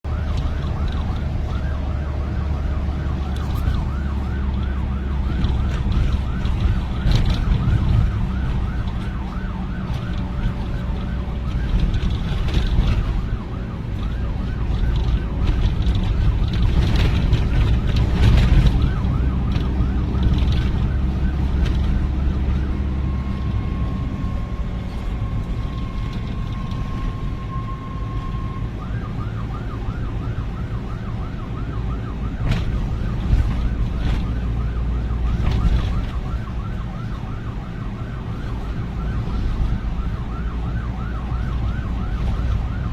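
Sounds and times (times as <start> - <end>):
low rumble of engines: 0.0 - 42.9
police siren yelping: 0.1 - 42.9.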